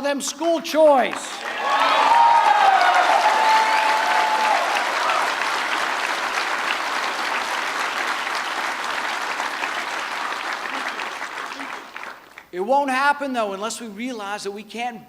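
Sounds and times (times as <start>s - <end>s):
audience applauding: 1.2s - 12.5s.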